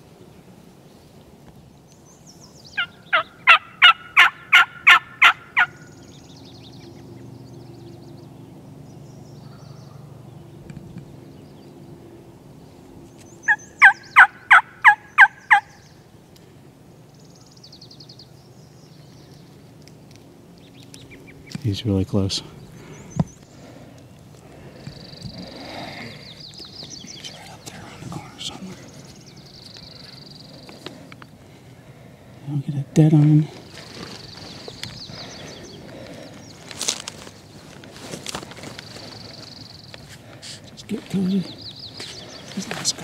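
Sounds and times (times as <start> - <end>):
wild turkey calling: 2.7 - 6.1, 13.4 - 16.1, 20.6 - 32.2, 32.8 - 43.0.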